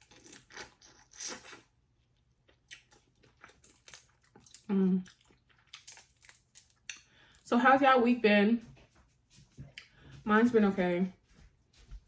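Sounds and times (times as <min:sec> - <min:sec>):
lip smacks and chewing: 0:00.0 - 0:07.4.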